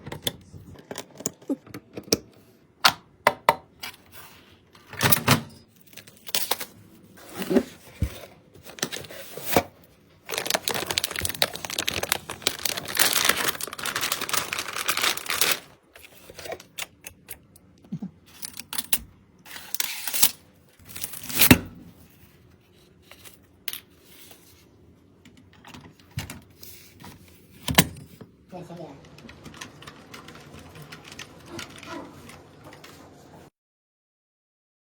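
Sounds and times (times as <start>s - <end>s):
packaging crinkling and tearing: 5.8s - 7.9s, 8.6s - 17.3s, 18.3s - 21.7s
packaging rustling: 5.8s - 17.0s
packaging clicks and knocks: 10.3s - 15.7s.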